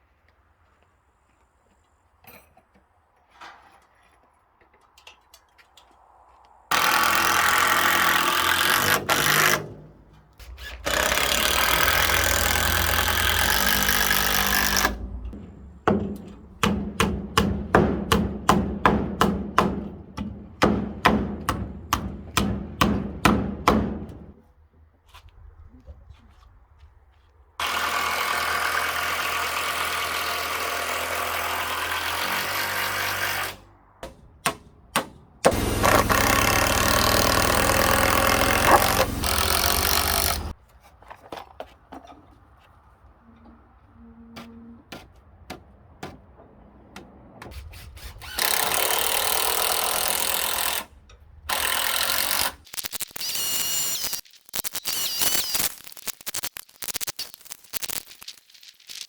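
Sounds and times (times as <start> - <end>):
power tool running: 6.7 - 9.8, 10.8 - 15.1, 27.6 - 33.6, 35.5 - 40.6.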